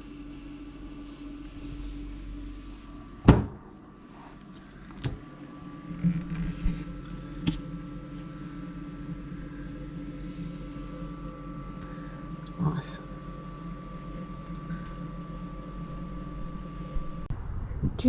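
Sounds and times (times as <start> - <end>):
steady hum: 0.0 - 18.0
fridge lid shutting with thud: 3.2 - 3.7.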